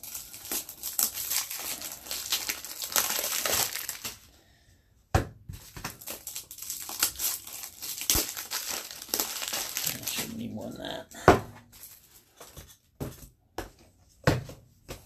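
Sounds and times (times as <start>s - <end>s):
plastic shrink-wrap crinkling: 0.0s - 4.3s, 5.8s - 11.0s, 11.7s - 12.8s.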